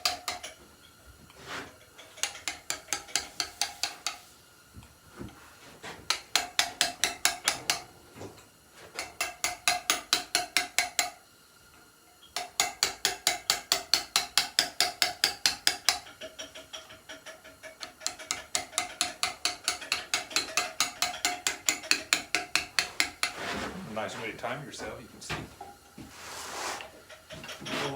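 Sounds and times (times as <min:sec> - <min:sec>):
hammer striking chisel on stone: 0:02.2 - 0:04.2, 0:06.1 - 0:07.8, 0:09.0 - 0:11.2, 0:12.4 - 0:16.1, 0:18.0 - 0:23.4.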